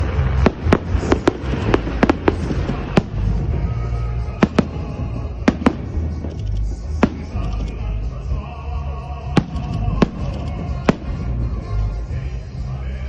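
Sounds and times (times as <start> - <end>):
fireworks bangs: 0.0 - 7.6, 9.3 - 11.8
low rumble: 0.0 - 13.0.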